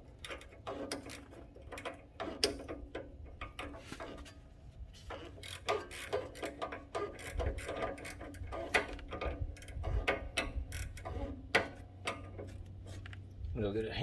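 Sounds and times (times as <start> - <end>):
ratcheting wrench clicking: 5.4 - 11.1.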